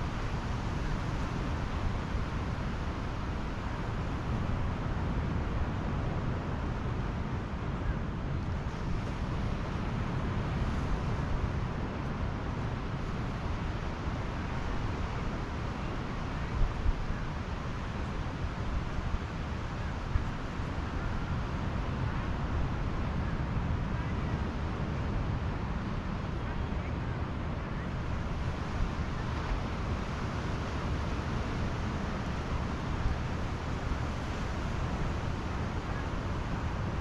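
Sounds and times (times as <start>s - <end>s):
surf rushing on beach: 8.6s - 37.0s.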